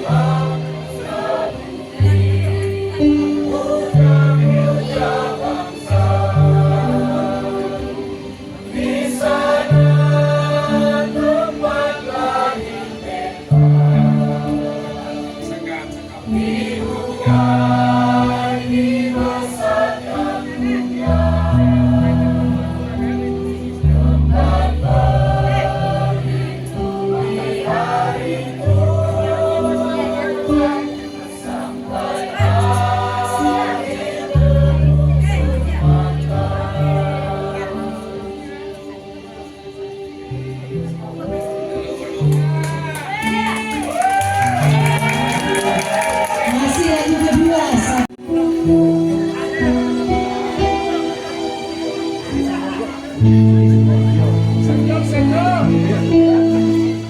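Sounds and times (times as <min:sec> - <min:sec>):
sustained low accompaniment notes: 0:00.0 - 0:42.6, 0:48.2 - 0:57.0
choir singing: 0:00.0 - 0:43.4, 0:44.6 - 0:57.0.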